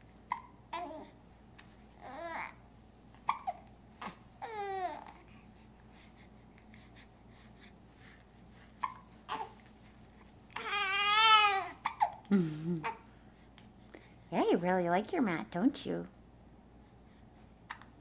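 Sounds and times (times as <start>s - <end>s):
baby hiccups: 0.3s - 0.6s, 3.3s - 3.6s.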